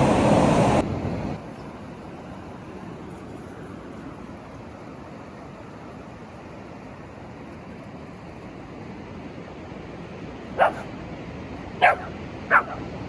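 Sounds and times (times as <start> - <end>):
puppy barking: 10.6 - 10.9, 11.8 - 12.9.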